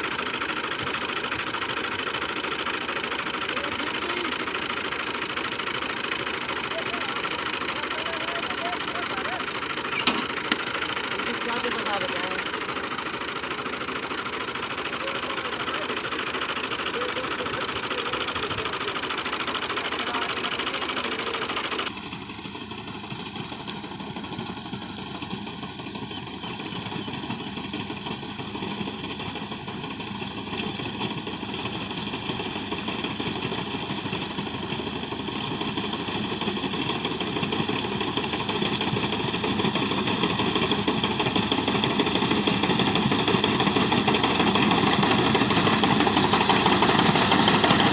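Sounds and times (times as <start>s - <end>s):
harvester engine running: 0.0s - 47.9s.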